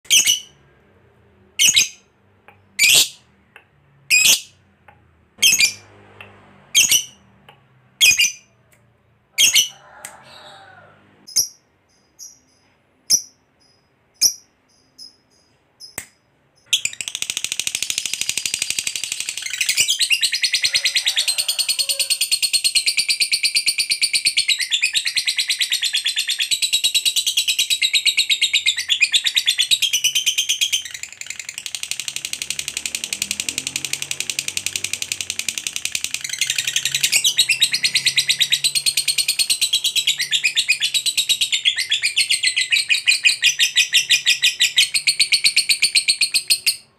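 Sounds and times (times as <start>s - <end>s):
lovebird chirps and rapid trill: 0.1s - 0.6s, 1.6s - 2.1s, 4.1s - 4.5s, 5.4s - 5.8s, 6.7s - 7.2s, 8.0s - 8.5s, 9.4s - 9.8s, 11.3s - 20.9s, 22.2s - 46.9s.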